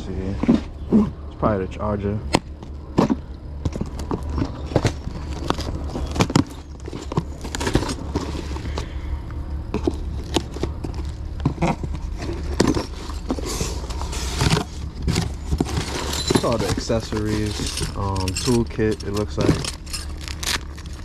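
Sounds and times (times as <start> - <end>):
steady low hum: 0.0 - 21.0
plastic or cardboard rustling: 3.7 - 9.0, 9.7 - 21.0
clicks and knocks of small parts: 14.4 - 21.0.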